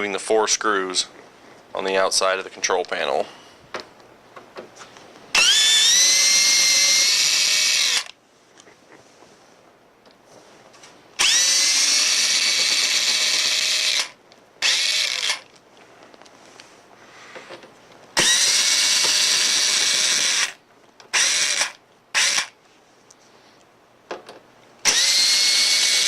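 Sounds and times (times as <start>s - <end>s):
power drill whining: 5.4s - 8.2s, 11.2s - 15.5s, 18.2s - 22.6s, 24.8s - 26.0s.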